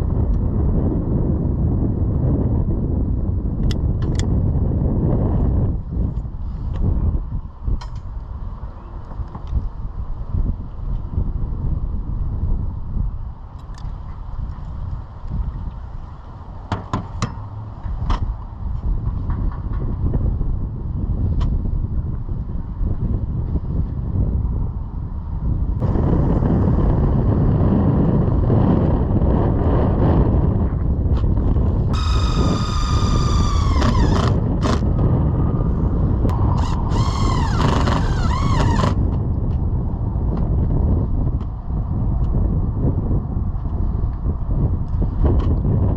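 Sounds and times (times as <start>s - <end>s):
traffic rumble: 0.0s - 45.9s
wind buffeting microphone: 0.0s - 45.9s
high whistling squeal: 32.0s - 34.4s, 36.3s - 39.0s.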